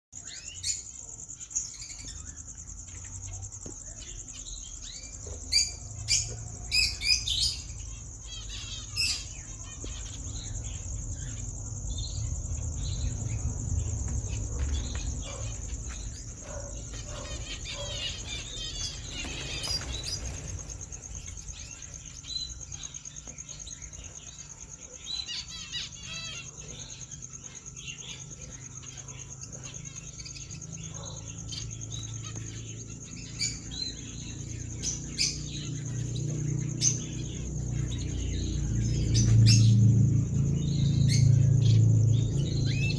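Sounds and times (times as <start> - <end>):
bird chirps and peeps: 0.2 - 42.9
insect drone: 0.2 - 42.9
low background rumble: 5.8 - 24.8, 31.7 - 42.9.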